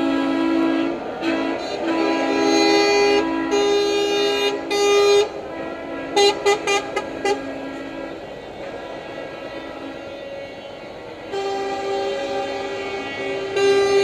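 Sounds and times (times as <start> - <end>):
short air horn toots: 0.0 - 8.1, 11.3 - 14.0
truck air horn blasts: 0.0 - 14.0.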